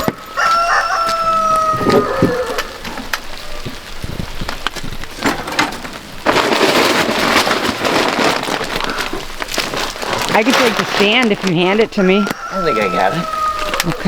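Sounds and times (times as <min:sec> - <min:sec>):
rain falling: 0:00.0 - 0:14.0.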